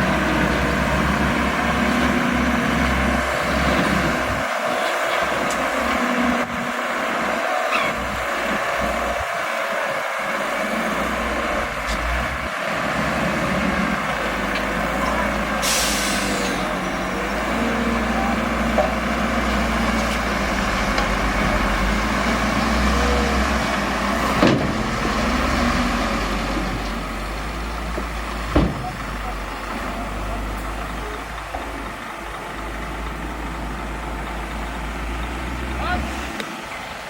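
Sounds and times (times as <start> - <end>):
diesel machinery running: 0.0 - 37.0
air hiss: 15.6 - 16.6
sharp knocks: 28.5 - 29.0.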